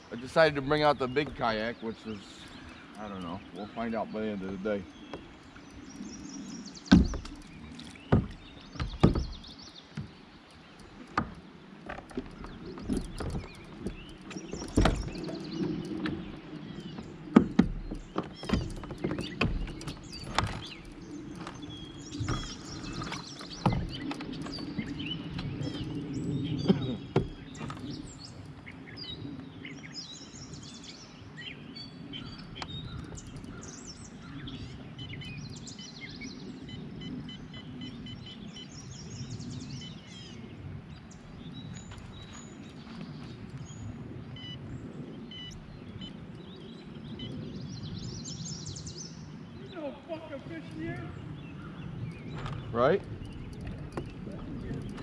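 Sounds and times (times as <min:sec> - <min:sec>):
birds chirping and singing: 0:00.0 - 0:55.0
hard knocks and thumps: 0:06.9 - 0:07.4, 0:08.1 - 0:10.2, 0:11.1 - 0:15.4, 0:17.3 - 0:21.6.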